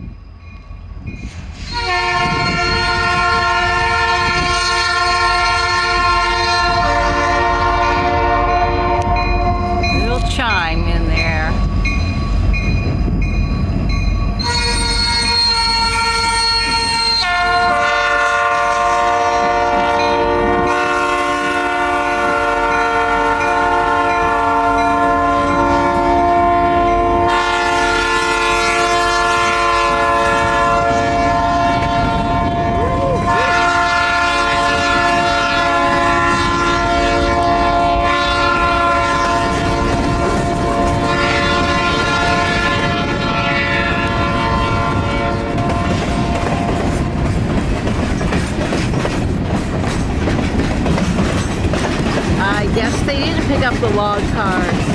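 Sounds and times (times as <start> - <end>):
wind on microphone: 0.0 - 18.0, 29.2 - 51.0
train rumbling past: 0.0 - 54.9
locomotive air horn: 1.7 - 10.3, 14.4 - 47.2.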